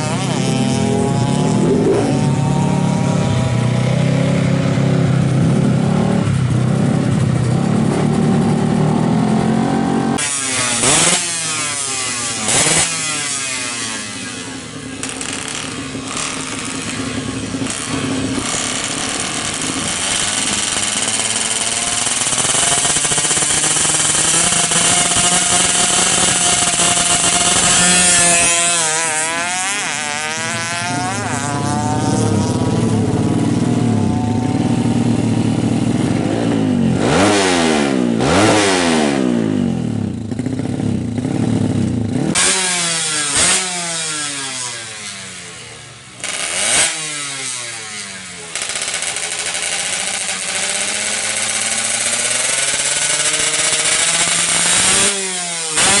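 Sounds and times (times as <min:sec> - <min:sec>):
two-stroke engine revving: 0:00.0 - 0:56.0.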